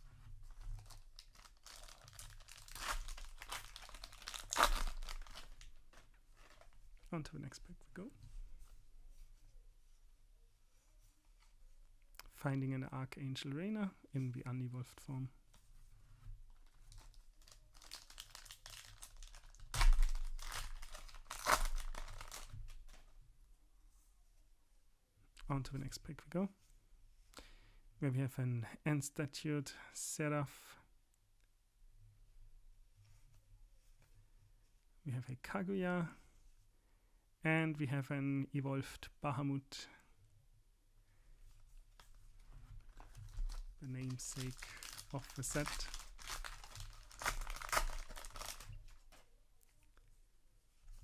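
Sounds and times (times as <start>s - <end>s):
wrapper crinkling and tearing: 0.0s - 6.8s, 16.6s - 23.0s, 42.8s - 49.2s.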